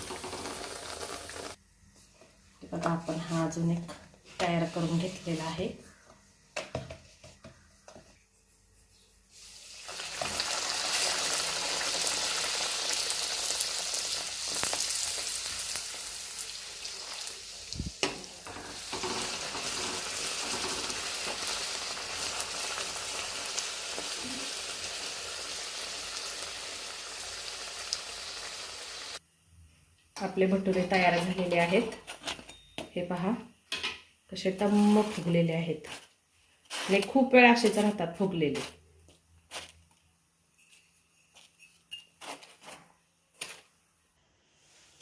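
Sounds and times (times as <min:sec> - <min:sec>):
bread deep-frying in oil: 0:00.0 - 0:01.6, 0:09.3 - 0:29.2.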